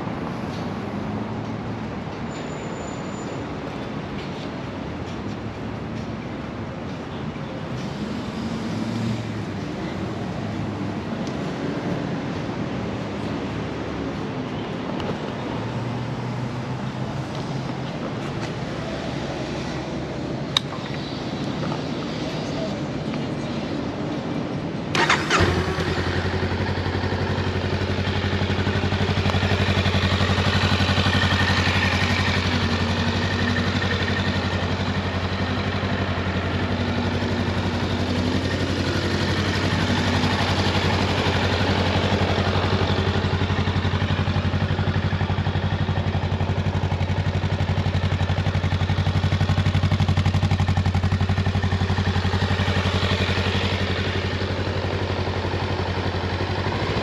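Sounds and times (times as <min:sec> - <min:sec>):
motorcycle engine idling: 0:24.9 - 0:57.0.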